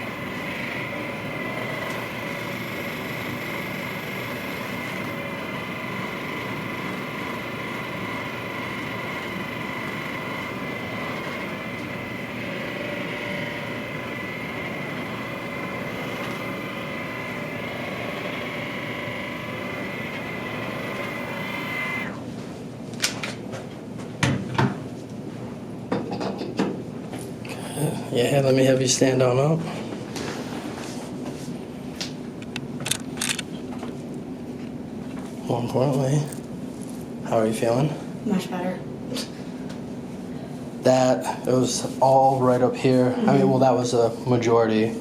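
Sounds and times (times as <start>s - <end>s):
small electric motor whining: 0.0s - 22.2s.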